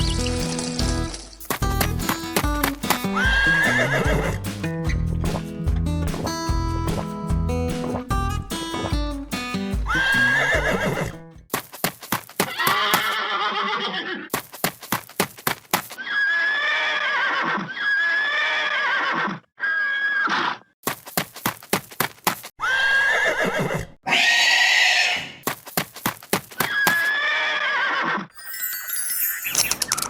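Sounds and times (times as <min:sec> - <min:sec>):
clip-clopping hoofbeats: 0:00.0 - 0:05.1
horse whinnying: 0:22.6 - 0:25.4.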